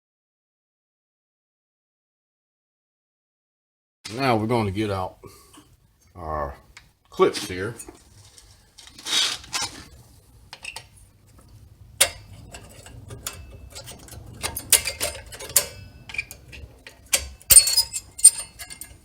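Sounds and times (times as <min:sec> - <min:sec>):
metal clips clinking: 0:12.0 - 0:19.0.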